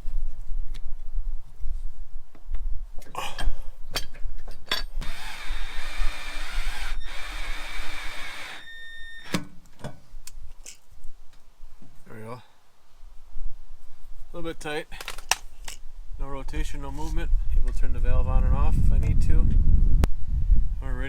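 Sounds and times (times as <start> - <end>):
power drill running: 5.0 - 9.4.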